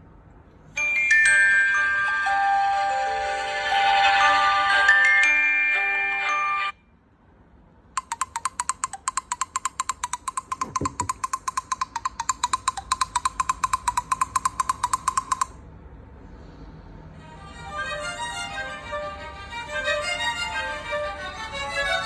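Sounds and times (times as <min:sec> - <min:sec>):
melodic chime ringtone: 0:00.8 - 0:06.8
rapid clicking beeps ringtone: 0:08.0 - 0:15.6.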